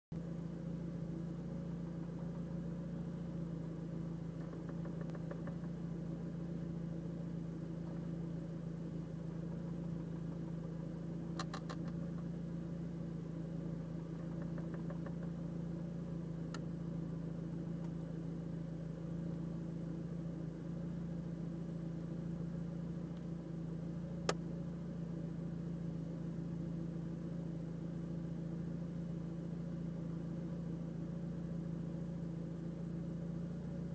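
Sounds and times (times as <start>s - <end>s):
car engine idling: 0.1s - 33.9s
rapid ticking: 4.4s - 5.7s, 14.1s - 15.3s
sharp clicks: 11.3s - 12.0s.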